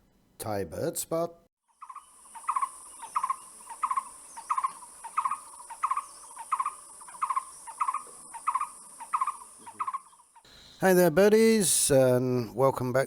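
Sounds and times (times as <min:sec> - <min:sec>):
high-pitched insect hiss: 0:01.8 - 0:10.8
bird calling: 0:01.8 - 0:11.0.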